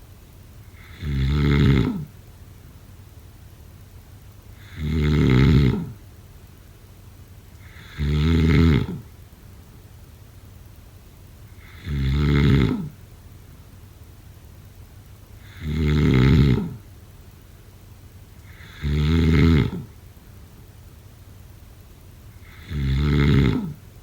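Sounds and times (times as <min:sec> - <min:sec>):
person snoring: 0:00.8 - 0:02.1, 0:04.6 - 0:06.0, 0:07.6 - 0:09.1, 0:11.6 - 0:13.0, 0:15.4 - 0:16.8, 0:18.4 - 0:19.9, 0:22.4 - 0:23.8.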